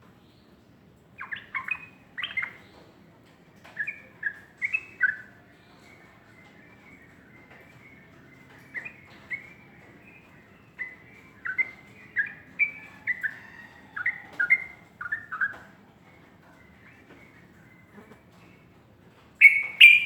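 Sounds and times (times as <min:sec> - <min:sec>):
bulbul singing: 0:01.2 - 0:02.6, 0:03.8 - 0:15.6, 0:19.4 - 0:20.0.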